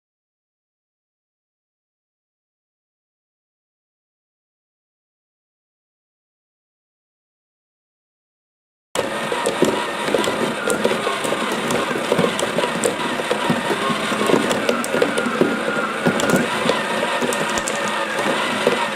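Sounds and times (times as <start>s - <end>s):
glass marbles rattling on cardboard: 9.0s - 18.9s.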